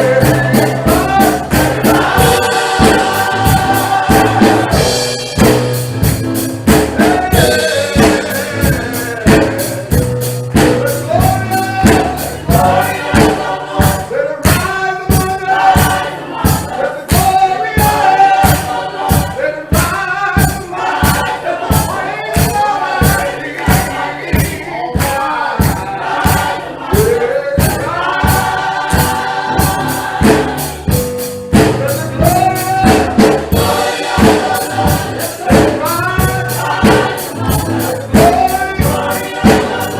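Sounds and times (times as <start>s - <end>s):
gospel choir singing: 0.0s - 39.9s
steady beat: 0.0s - 39.9s
tambourine-like percussion: 0.0s - 39.9s.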